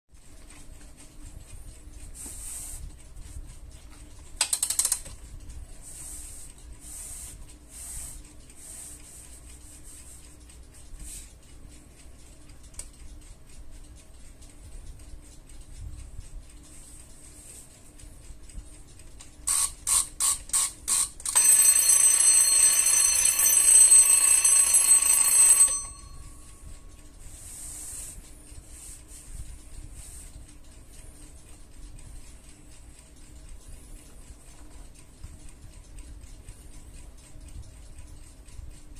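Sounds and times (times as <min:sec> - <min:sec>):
mechanical clicks and rustling: 0:03.5 - 0:05.6
alarm clock ringing: 0:19.4 - 0:28.2.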